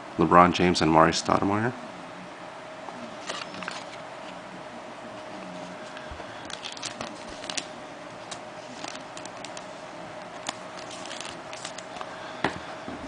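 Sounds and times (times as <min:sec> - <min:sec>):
faint steady hum: 0:00.0 - 0:13.0
cards clicking and rustling: 0:03.2 - 0:04.0, 0:05.9 - 0:09.7, 0:10.3 - 0:12.1.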